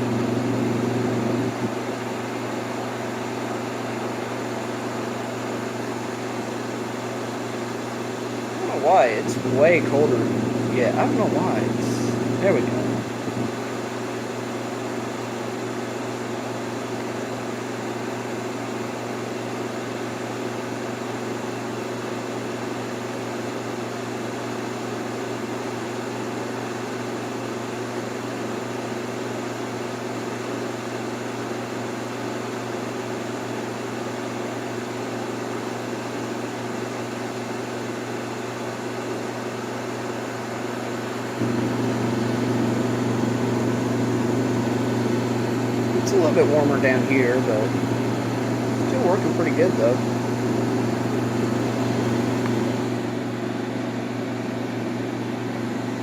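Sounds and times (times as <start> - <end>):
air conditioner hum: 0.0 - 20.4, 31.9 - 56.0
blower air rush: 8.4 - 13.6, 41.3 - 53.3.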